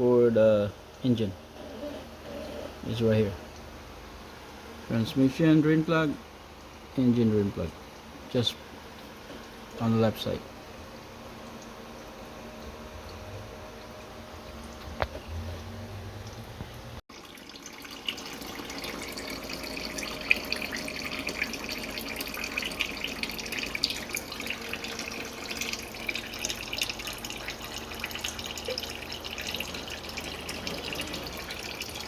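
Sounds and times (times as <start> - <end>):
oil pouring into drain pan: 17.1 - 32.0.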